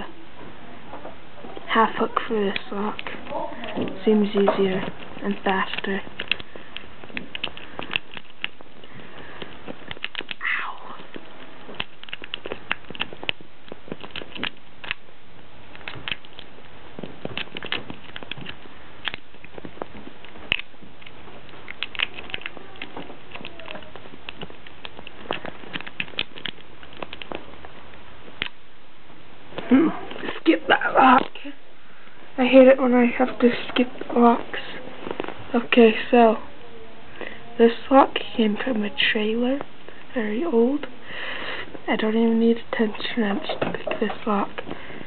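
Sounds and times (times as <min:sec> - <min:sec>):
lock pick clicking and scraping: 0:02.4 - 0:10.4, 0:11.0 - 0:15.0, 0:15.7 - 0:27.4
background hiss: 0:22.5 - 0:45.0.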